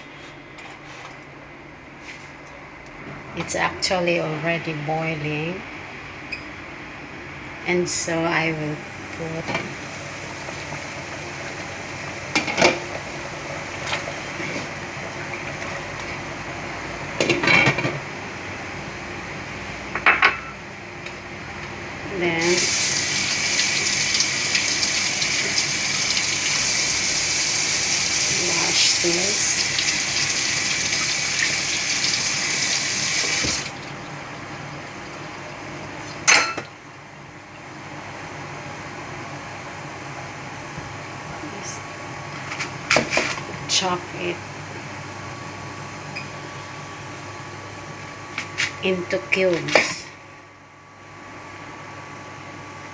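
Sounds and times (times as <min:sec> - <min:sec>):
water boiling in a pot: 0:07.3 - 0:16.7, 0:22.2 - 0:39.6
kitchen tap running: 0:09.0 - 0:13.9, 0:22.3 - 0:36.3.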